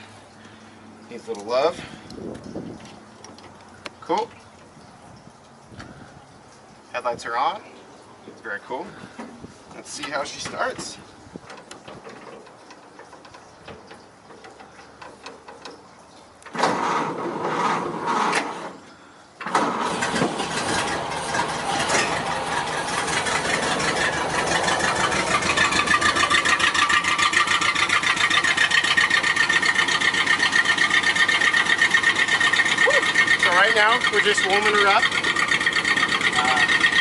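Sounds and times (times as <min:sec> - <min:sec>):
car engine idling: 0:07.6 - 0:37.0
starter motor cranking: 0:09.9 - 0:37.0.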